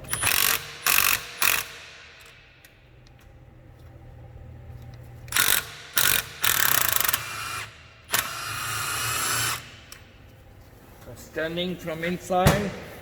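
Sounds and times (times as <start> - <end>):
impact wrench rattling: 0.0 - 2.8, 5.3 - 10.1.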